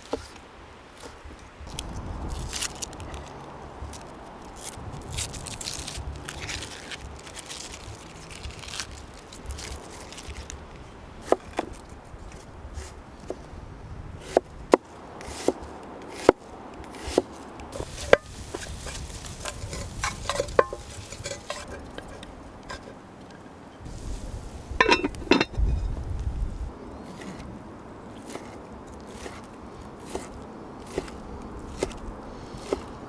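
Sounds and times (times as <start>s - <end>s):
rustling: 0.0s - 13.4s, 16.1s - 27.6s.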